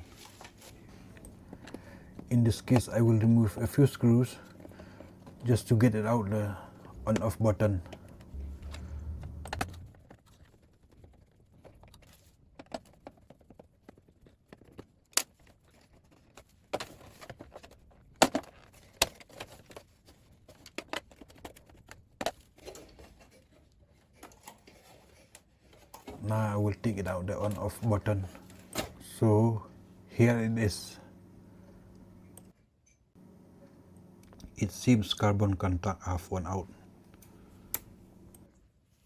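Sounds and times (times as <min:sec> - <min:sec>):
low hum: 0:00.7 - 0:09.9, 0:26.2 - 0:32.5, 0:33.2 - 0:38.5.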